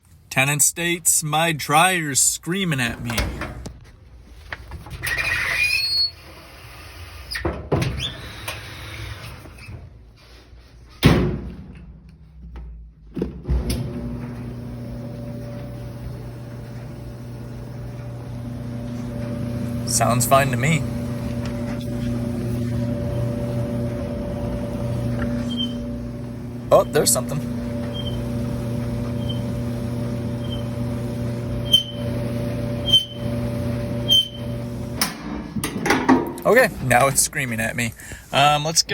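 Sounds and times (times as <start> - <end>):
clothes dryer humming: 0.0 - 4.5, 13.2 - 38.9
dryer drum squeaking: 4.9 - 6.5, 7.3 - 9.8, 13.6 - 37.8
short squeak: 5.0 - 6.2, 25.4 - 25.8, 31.6 - 32.0, 32.8 - 33.2, 34.1 - 34.4
clothes dryer door clunking: 35.0 - 37.0.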